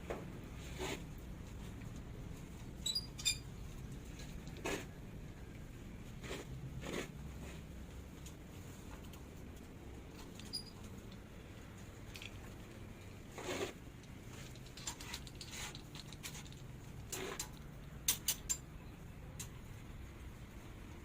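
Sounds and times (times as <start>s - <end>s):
light clicks taps and scrapes: 6.2s - 18.7s.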